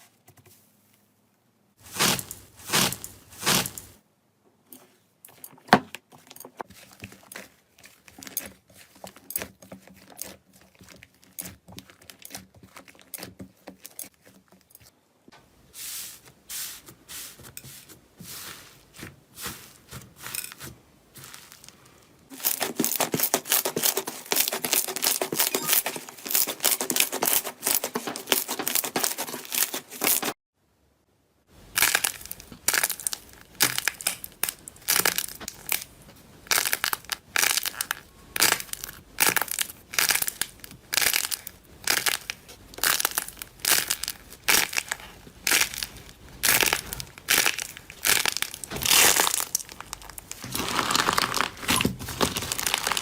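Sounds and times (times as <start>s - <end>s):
slime crunching: 1.8s - 4.0s, 6.1s - 14.7s, 20.2s - 30.3s, 31.7s - 53.0s
slime crackling and popping: 31.7s - 35.9s, 36.5s - 53.0s.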